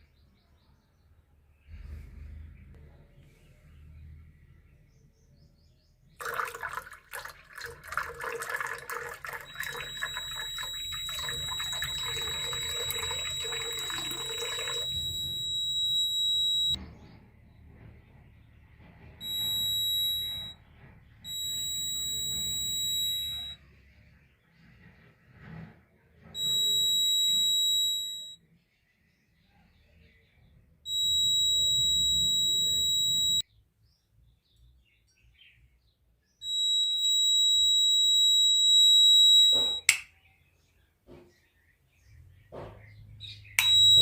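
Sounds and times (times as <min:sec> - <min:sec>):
high-pitched alarm buzzer: 0:06.2 - 0:16.8, 0:19.2 - 0:20.6, 0:21.3 - 0:23.6, 0:26.4 - 0:28.4, 0:30.9 - 0:33.4, 0:36.4 - 0:39.9, 0:43.6 - 0:44.0
sharp click: 0:39.6 - 0:40.1.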